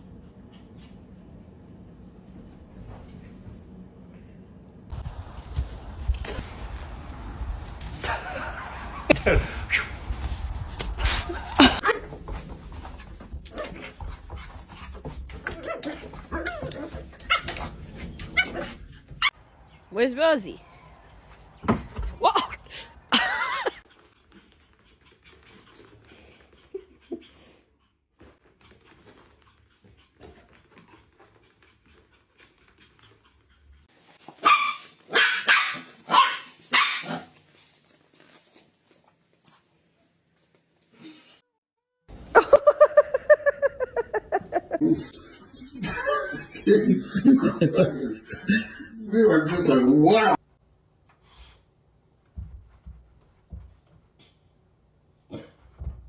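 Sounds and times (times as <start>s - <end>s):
dog barking: 34.4s - 37.3s.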